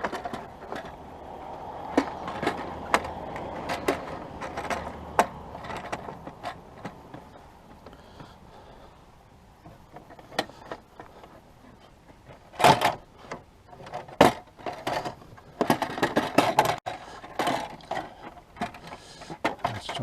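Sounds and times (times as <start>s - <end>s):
plastic panel knocking and clattering: 13.8s - 18.0s.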